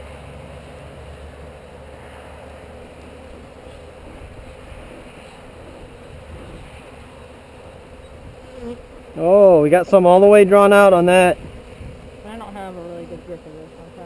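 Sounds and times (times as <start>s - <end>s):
bees buzzing: 0.1s - 14.0s
wind rumble on microphone: 3.3s - 7.2s, 7.8s - 8.8s, 11.3s - 13.2s.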